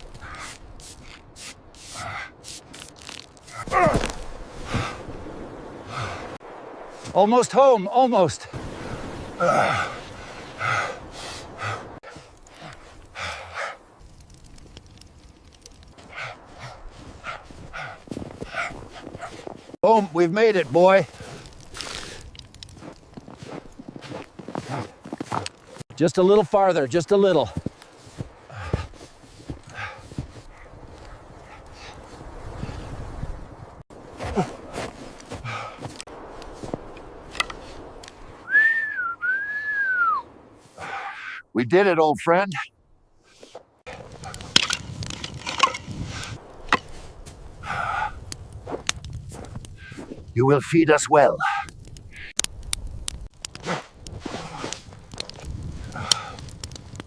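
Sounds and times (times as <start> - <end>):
heavy labored breathing: 1.9 - 2.4, 5.8 - 6.4, 9.4 - 13.9, 15.9 - 19.7, 28.2 - 33.0, 34.2 - 36.0, 40.7 - 41.5, 47.5 - 48.4, 55.8 - 56.6
long whistled notes: 38.4 - 40.3.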